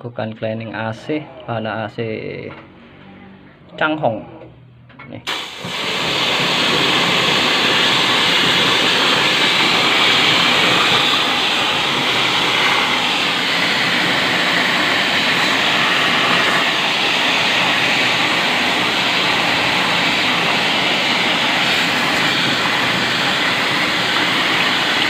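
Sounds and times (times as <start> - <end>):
cleaning pump running: 5.3 - 25.0
high-pressure water spray hissing: 5.3 - 25.0.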